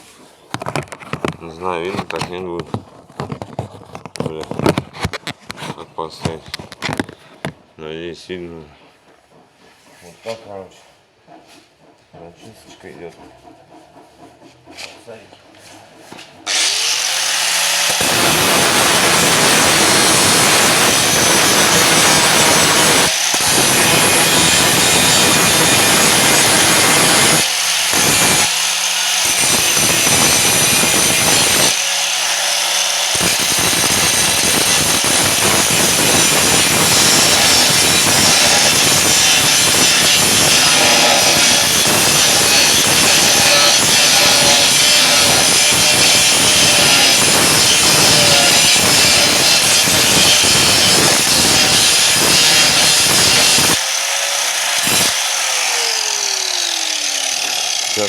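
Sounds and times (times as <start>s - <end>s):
angle grinder grinding metal: 16.4s - 58.0s.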